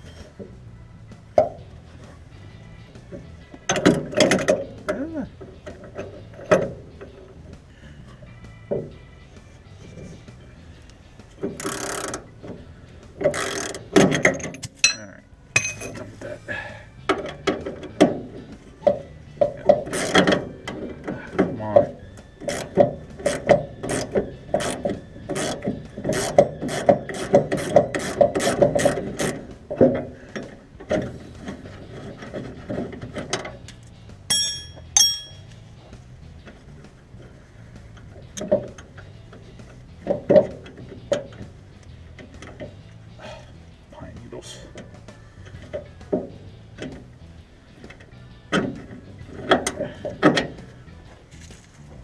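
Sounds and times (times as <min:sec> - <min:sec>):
metal clanks and knocks: 0:03.0 - 0:07.4, 0:11.4 - 0:16.2, 0:17.0 - 0:35.6, 0:37.8 - 0:43.0, 0:47.8 - 0:50.7
ratchet wrench clicking: 0:11.5 - 0:12.2, 0:13.2 - 0:15.0, 0:19.8 - 0:20.4
ringing metallic clinks: 0:14.3 - 0:16.0, 0:34.3 - 0:35.6.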